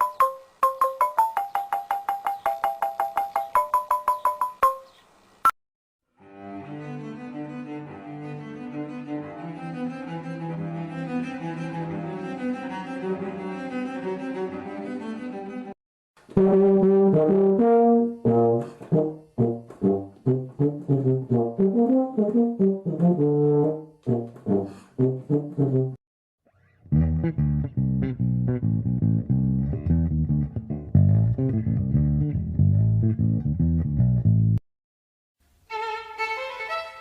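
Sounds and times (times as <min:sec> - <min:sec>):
instrument playing melody: 0:00.0 - 0:04.9.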